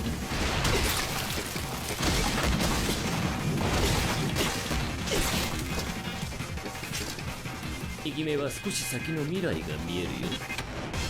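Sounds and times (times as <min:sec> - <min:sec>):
background music: 0:00.0 - 0:11.0
crashes and impacts: 0:00.2 - 0:07.5.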